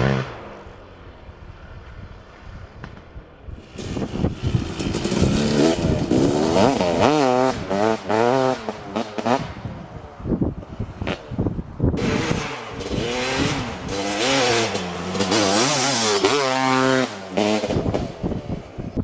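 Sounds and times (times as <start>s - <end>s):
dirt bike engine revving: 3.6s - 9.8s, 11.0s - 18.8s.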